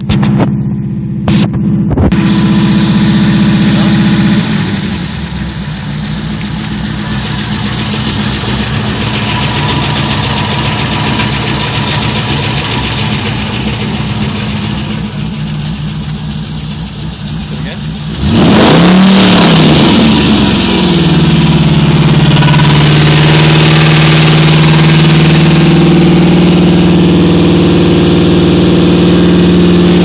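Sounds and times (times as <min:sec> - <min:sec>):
car engine idling: 0:00.0 - 0:30.0
high-pitched whine: 0:00.0 - 0:30.0.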